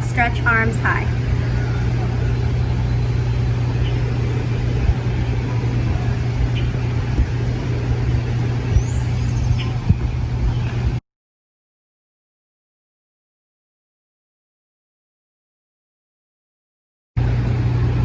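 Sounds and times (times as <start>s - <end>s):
low rumble of road traffic: 0.0s - 11.0s, 17.2s - 18.0s
high rising chirp: 0.2s - 10.8s.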